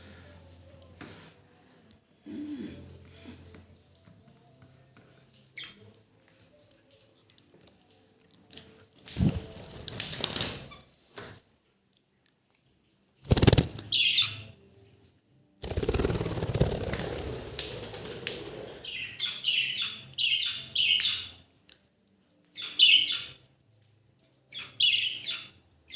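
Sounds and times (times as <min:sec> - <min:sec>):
wings flapping: 0:09.0 - 0:10.7, 0:13.2 - 0:14.0, 0:15.6 - 0:18.8.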